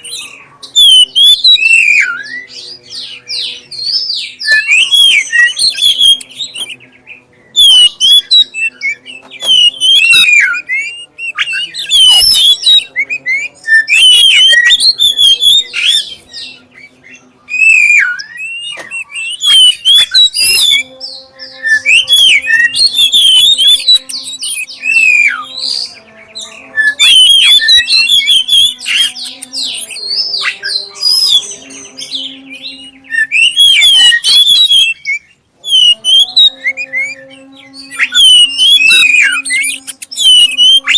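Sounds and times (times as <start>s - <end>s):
bird singing whistled phrases: 0.0s - 6.8s, 7.5s - 40.9s
bird chattering: 17.5s - 40.9s.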